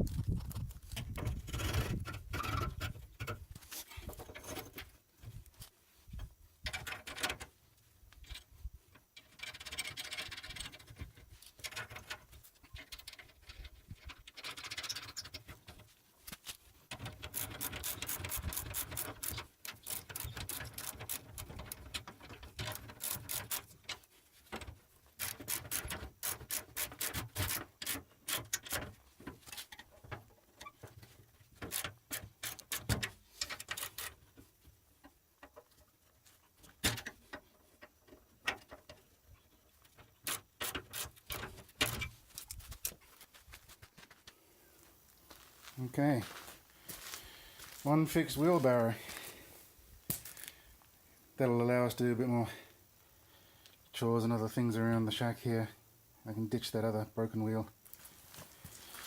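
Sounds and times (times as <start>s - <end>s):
metal parts scraping: 3.7s - 4.9s.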